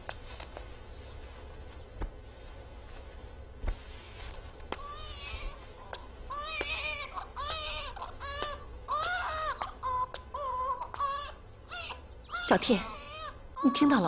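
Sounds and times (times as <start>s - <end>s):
baby crying: 4.8s - 5.6s, 6.3s - 14.0s.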